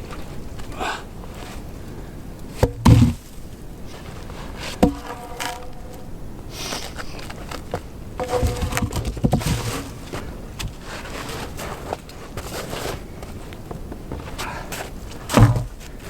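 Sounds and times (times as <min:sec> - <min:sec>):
heavy knocks and thumps: 0:02.6 - 0:03.3, 0:04.8 - 0:06.1, 0:08.2 - 0:10.8, 0:15.3 - 0:16.0.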